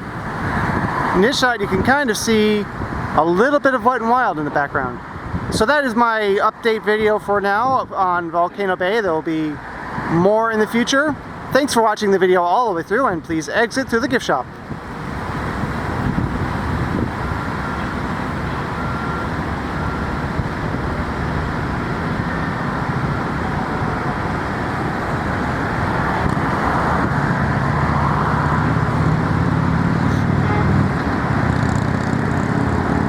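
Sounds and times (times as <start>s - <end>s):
vehicle engine hum: 0.0s - 5.7s, 13.0s - 33.0s
road traffic noise: 0.0s - 33.0s.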